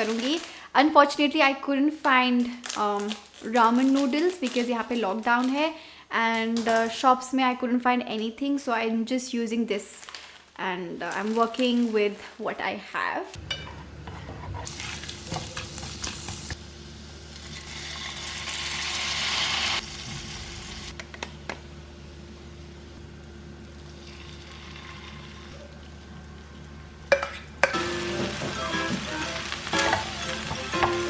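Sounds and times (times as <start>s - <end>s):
hiss from cooking pan: 17.4s - 20.9s.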